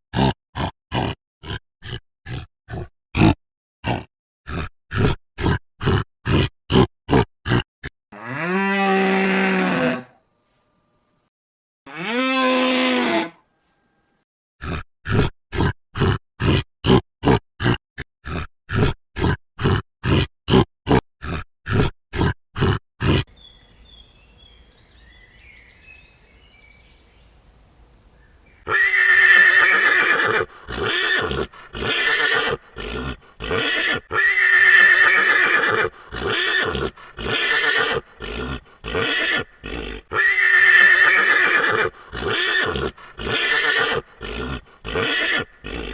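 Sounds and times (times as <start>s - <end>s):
rasping animal calls: 11.9s - 13.4s, 28.6s - 45.9s
zebra braying: 28.6s - 45.9s.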